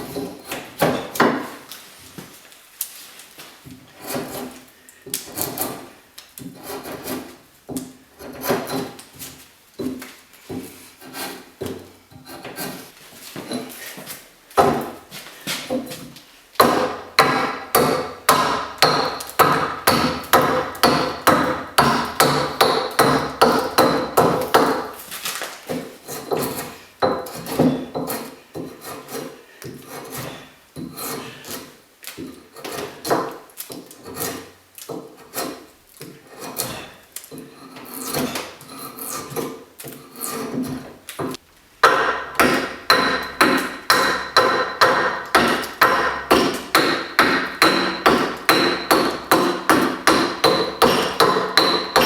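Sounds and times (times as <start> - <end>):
edge tool shaving wood: 3.8 - 7.4, 8.2 - 9.1, 10.7 - 13.0, 16.6 - 41.3.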